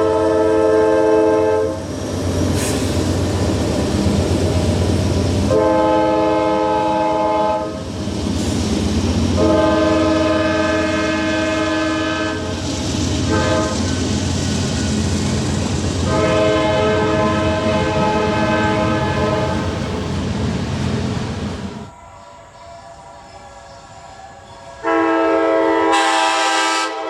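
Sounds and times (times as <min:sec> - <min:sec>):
locomotive air horn blasts: 0:00.0 - 0:01.8, 0:05.5 - 0:07.8, 0:09.4 - 0:12.6, 0:13.2 - 0:13.9, 0:16.0 - 0:19.8, 0:24.8 - 0:27.0
train rumble: 0:00.0 - 0:27.0.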